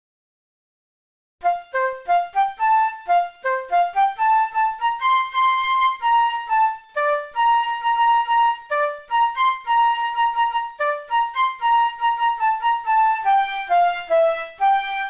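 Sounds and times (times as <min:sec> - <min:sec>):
synthesized flute melody: 0:01.4 - 0:15.0.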